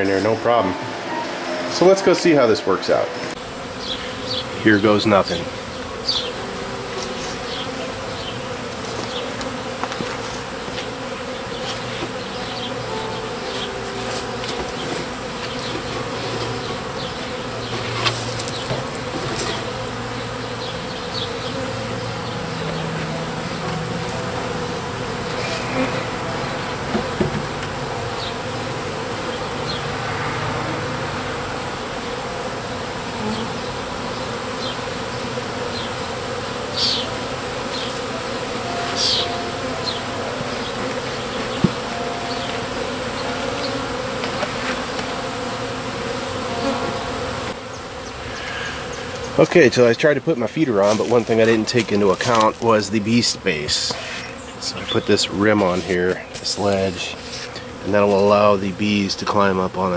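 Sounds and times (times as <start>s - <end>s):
honeybees buzzing: 0.0s - 59.9s
light knocks on hive parts: 40.9s - 41.8s.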